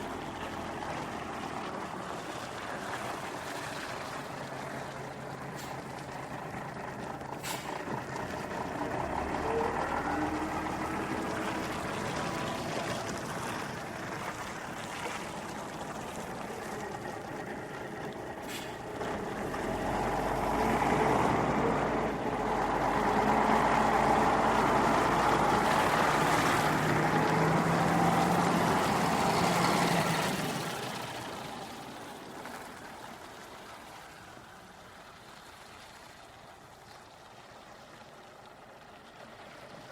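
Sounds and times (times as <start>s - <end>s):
bus engine running: 4.7s - 14.8s, 15.4s - 31.9s.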